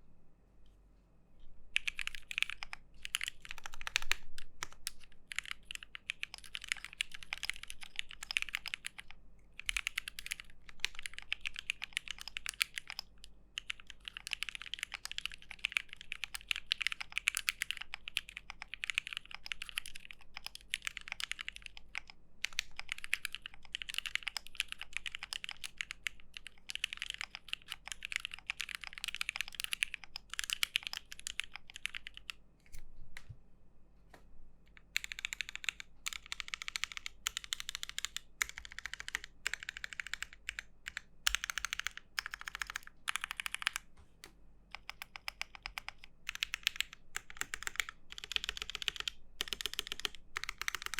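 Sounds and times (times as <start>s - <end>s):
mechanical keyboard key clacks: 44.8s - 50.9s.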